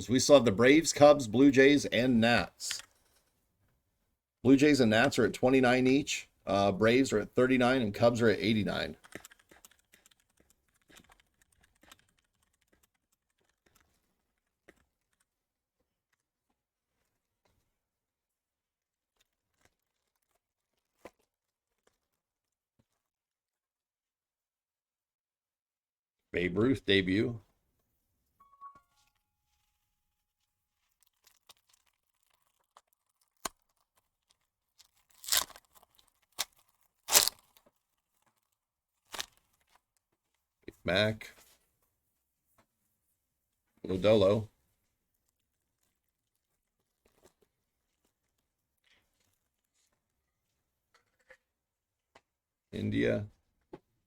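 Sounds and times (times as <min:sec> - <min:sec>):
faint clicks and taps: 0:08.8 - 0:17.7
wrappers being torn open: 0:30.9 - 0:40.0.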